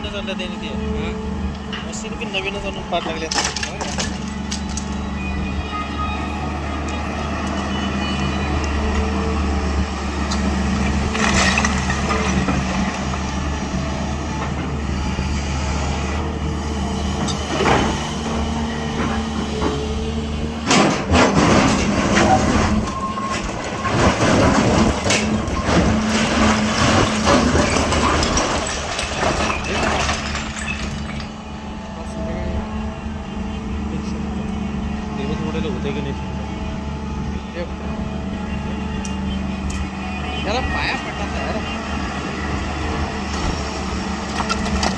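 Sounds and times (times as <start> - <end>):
excavator diesel engine hum: 0.0 - 44.9
knocks and clatter: 3.0 - 5.0, 20.6 - 31.3.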